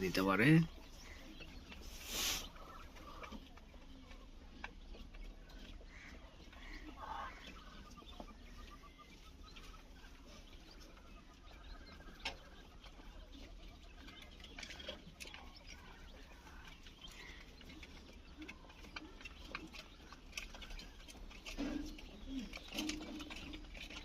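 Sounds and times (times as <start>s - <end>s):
quail chirping: 0.0s - 24.0s
light clicks and patter: 9.2s - 24.0s.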